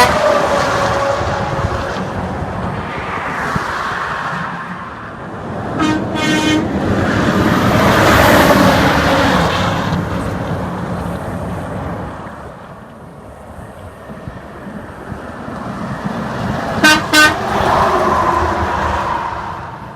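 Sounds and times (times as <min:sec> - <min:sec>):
truck horn blast: 0:00.0 - 0:01.8, 0:05.8 - 0:06.8, 0:16.8 - 0:17.5
truck passing: 0:00.0 - 0:19.9.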